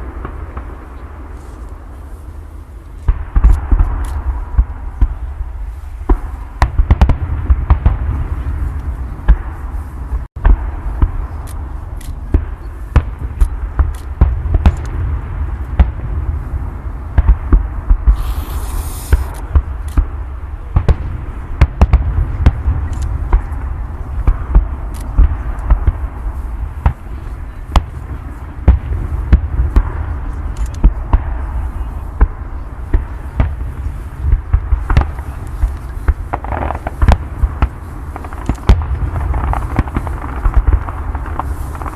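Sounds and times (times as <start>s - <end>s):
fireworks bangs and booms: 0.0s - 41.9s
heavy low rumble: 7.2s - 41.9s
hissing burst: 18.1s - 19.5s.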